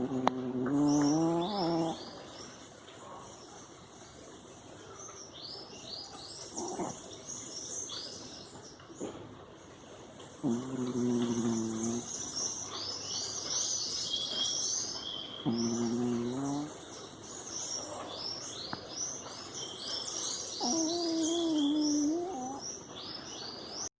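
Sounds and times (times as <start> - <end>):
cat snoring: 0.0 - 2.0, 6.6 - 6.9, 10.4 - 12.1, 15.4 - 16.8, 20.6 - 22.6
birds chirping: 0.0 - 23.9.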